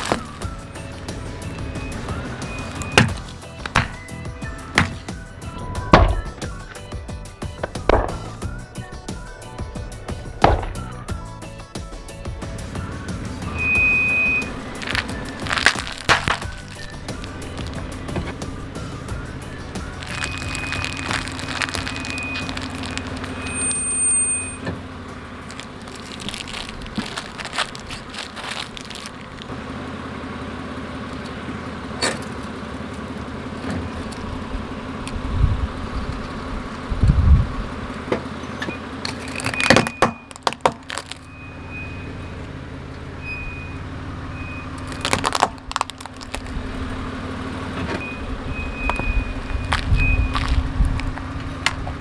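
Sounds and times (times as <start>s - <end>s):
objects crushed under tyres: 0.0s - 11.3s, 12.2s - 29.6s, 37.9s - 42.2s, 43.3s - 52.0s
low thumps: 0.0s - 28.2s
car engine running: 0.0s - 52.0s.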